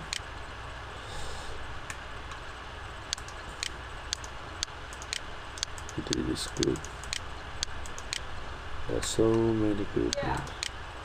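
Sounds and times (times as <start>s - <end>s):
low electrical hum: 0.0s - 11.0s
computer mouse clicks: 3.1s - 8.3s, 10.1s - 10.8s.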